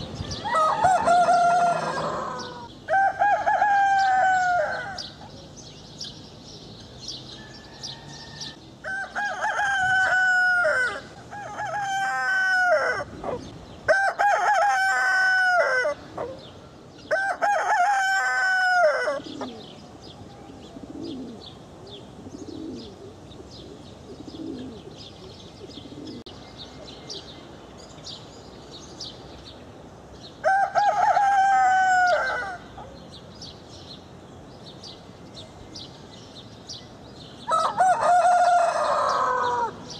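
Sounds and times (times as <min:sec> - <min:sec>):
rooster crowing: 0:00.4 - 0:05.1, 0:07.4 - 0:13.1, 0:13.9 - 0:16.0, 0:17.1 - 0:19.2, 0:30.4 - 0:32.7, 0:37.5 - 0:39.8
small birds chirping: 0:04.0 - 0:08.8, 0:19.2 - 0:30.4.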